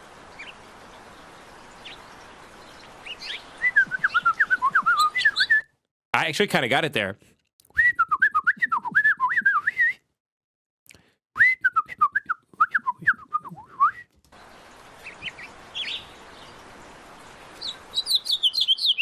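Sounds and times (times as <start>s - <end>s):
finch chirps: 1.7s - 5.6s, 14.4s - 16.7s, 17.5s - 19.0s
man whistling bird song: 3.6s - 5.8s, 7.7s - 10.1s, 11.4s - 14.1s, 18.0s - 19.0s
finch warbling song: 17.6s - 19.0s.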